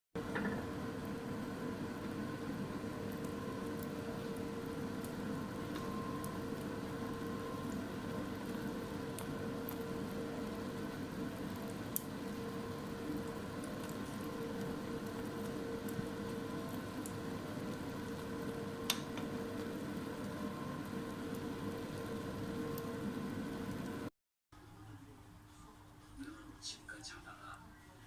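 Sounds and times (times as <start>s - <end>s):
food bubbling and sizzling: 0.2s - 24.1s
faint hum: 0.2s - 28.0s.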